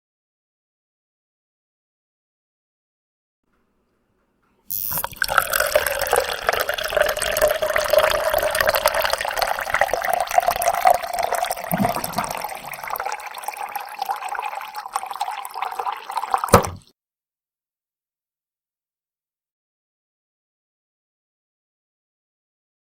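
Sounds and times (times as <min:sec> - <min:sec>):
water pouring into a container: 0:04.7 - 0:16.9
short knock: 0:16.5 - 0:16.8.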